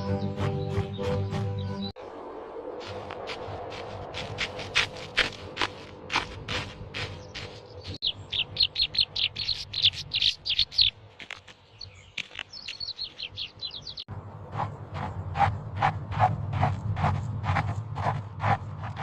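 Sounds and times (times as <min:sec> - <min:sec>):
bird chirping rapidly: 0:00.0 - 0:01.9, 0:06.9 - 0:11.0, 0:11.6 - 0:14.1.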